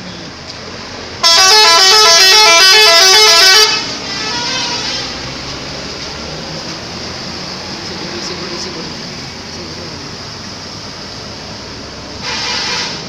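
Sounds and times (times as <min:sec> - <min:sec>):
steady background noise: 0:00.0 - 0:13.0
multi-note bus horn melody: 0:01.2 - 0:05.2, 0:12.2 - 0:13.0.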